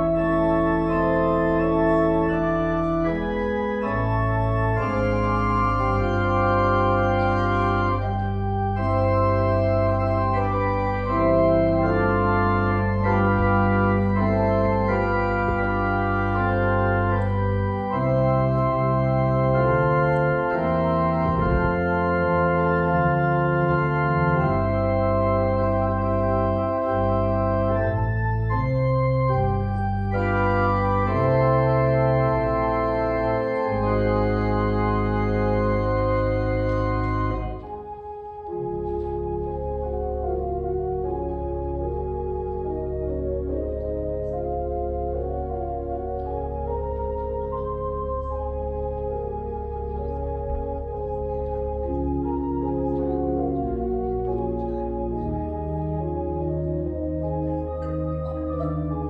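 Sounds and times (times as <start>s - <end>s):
church organ chords: 0.0s - 59.0s.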